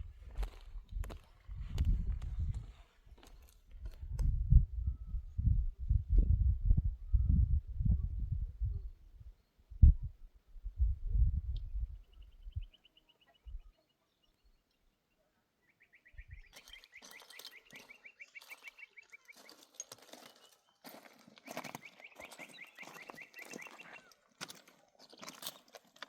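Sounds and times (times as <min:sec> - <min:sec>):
bird trilling: 0:15.8 - 0:19.5, 0:21.8 - 0:24.2.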